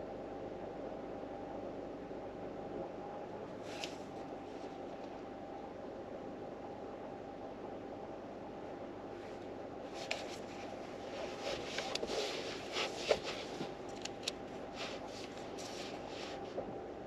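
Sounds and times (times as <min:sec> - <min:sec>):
steady background hum: 0:00.0 - 0:17.0
book pages rustling and turning: 0:03.6 - 0:04.7, 0:09.9 - 0:16.6.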